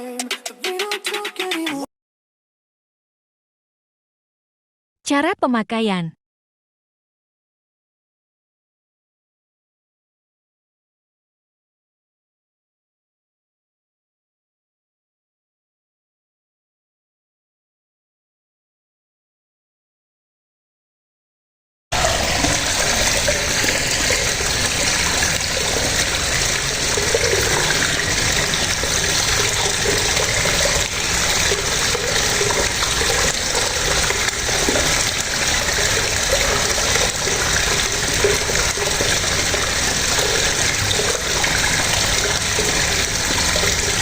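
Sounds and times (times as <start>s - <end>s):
electric pump running: 22.0s - 44.0s.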